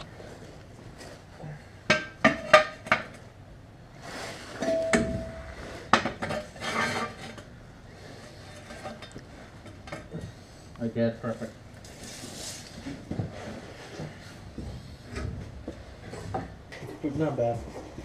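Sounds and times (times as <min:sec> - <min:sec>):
metal scrape: 0:04.0 - 0:07.4
ringing metal clang: 0:04.6 - 0:05.6.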